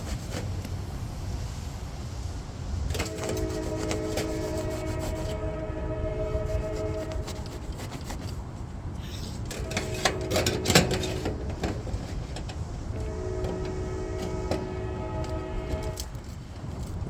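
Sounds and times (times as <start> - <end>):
metal scraping on gutter: 9.2 - 16.1.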